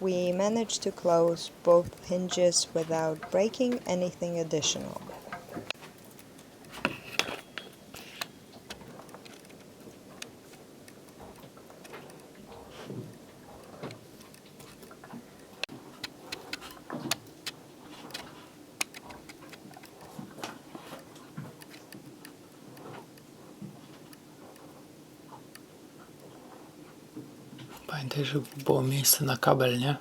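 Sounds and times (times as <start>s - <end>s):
faint steady hum: 0.0s - 30.0s
small plastic clicks and taps: 16.0s - 20.5s.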